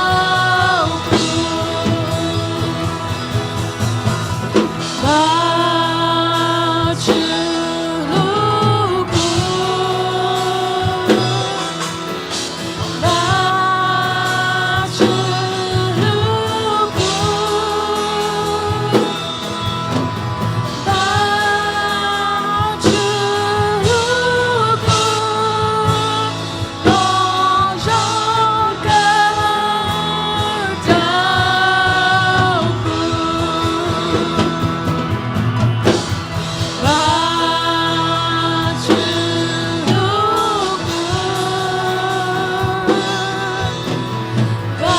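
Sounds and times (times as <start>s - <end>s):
worship singing over a band: 0.0s - 44.9s.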